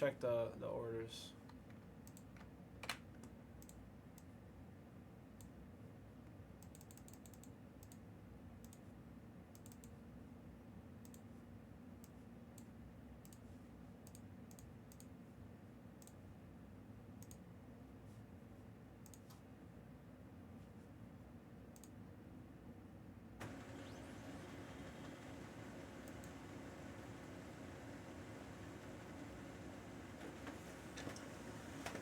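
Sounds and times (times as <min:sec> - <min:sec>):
low room hum: 0:00.0 - 0:32.0
computer keyboard typing: 0:06.6 - 0:08.0, 0:09.6 - 0:09.9.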